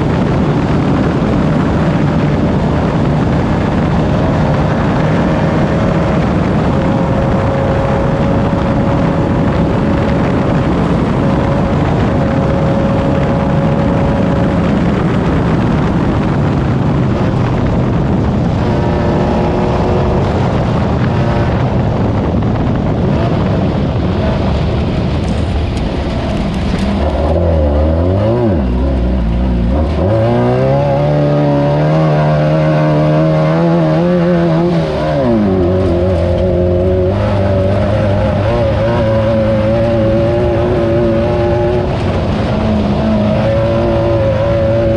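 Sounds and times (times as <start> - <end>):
rough terrain and chassis noise: 0.0 - 44.9
buggy engine revving under load: 16.6 - 44.9.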